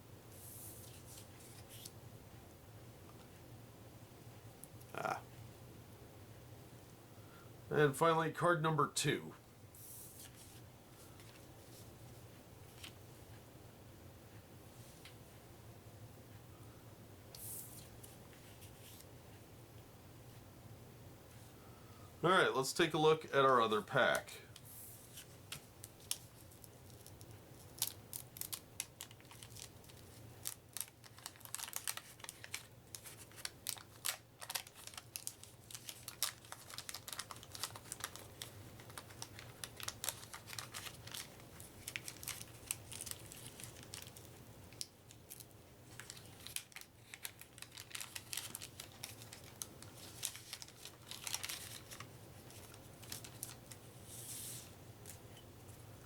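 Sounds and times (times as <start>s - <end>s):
paper wrapper crinkling and tearing: 25.2s - 53.9s
cards being handled: 45.9s - 55.2s.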